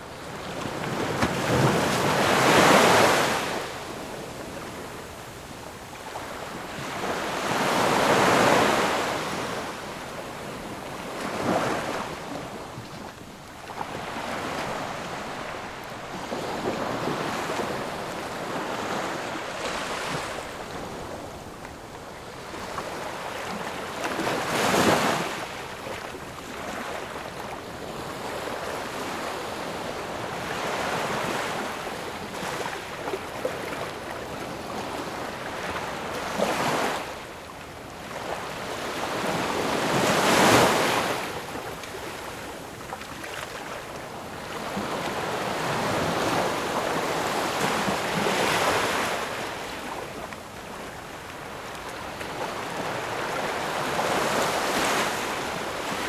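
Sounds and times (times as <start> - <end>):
ocean waves breaking: 0.1 - 5.1, 6.1 - 21.6.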